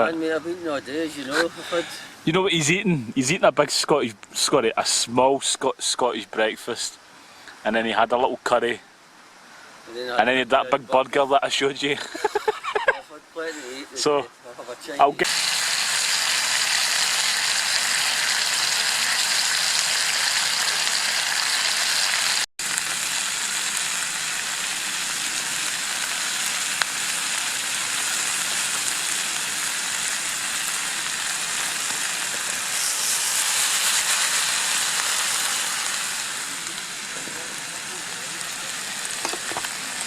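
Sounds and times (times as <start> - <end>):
meat sizzling in a frying pan: 14.8 - 40.0.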